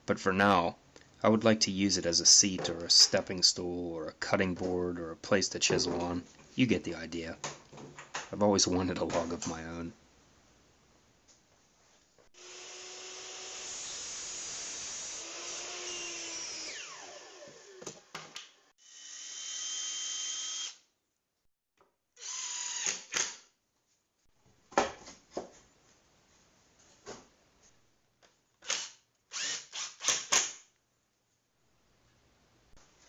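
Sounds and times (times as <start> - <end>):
power tool running: 12.4 - 18.2.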